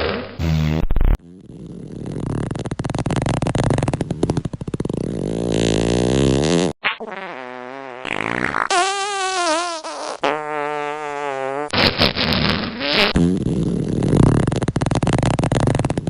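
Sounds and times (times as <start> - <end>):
fart sounds: 0.0 - 16.0.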